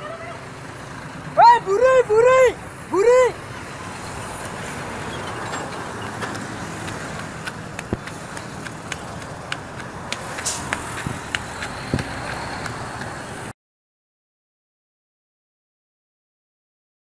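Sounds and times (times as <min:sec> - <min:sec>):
vehicle engine and road hum: 0:00.0 - 0:13.6.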